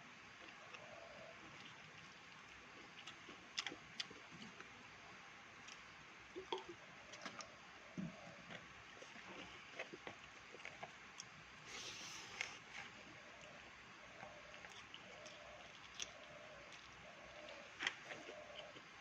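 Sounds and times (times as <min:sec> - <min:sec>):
faint steady hiss: 0:00.0 - 0:19.0
wet chewing: 0:00.4 - 0:04.7, 0:05.6 - 0:12.7, 0:13.4 - 0:19.0
small clicks while eating: 0:01.5 - 0:04.8, 0:05.6 - 0:11.4, 0:14.2 - 0:19.0.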